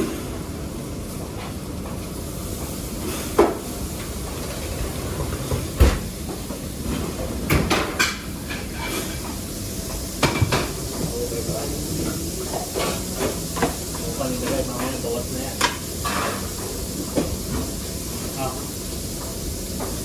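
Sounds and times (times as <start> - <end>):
steady kitchen hiss: 0.0 - 20.0
pans and utensils clattering: 6.8 - 18.5.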